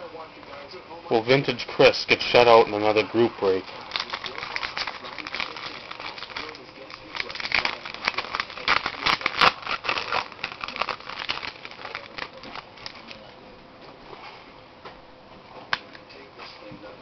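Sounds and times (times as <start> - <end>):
wrapper tearing and crinkling: 2.3 - 13.3.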